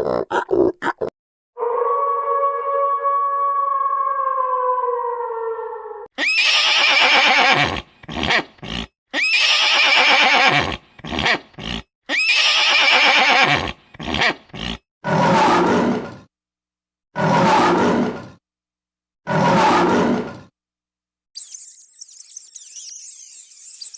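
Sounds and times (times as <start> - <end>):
horse whinnying: 6.2 - 14.8.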